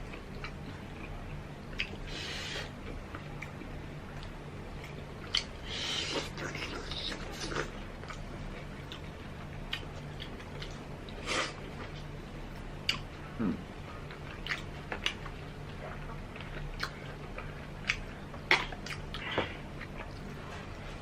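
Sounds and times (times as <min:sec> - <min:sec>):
steady low hum: 0:00.0 - 0:21.0
chewing and biting: 0:04.2 - 0:12.1, 0:14.0 - 0:20.8.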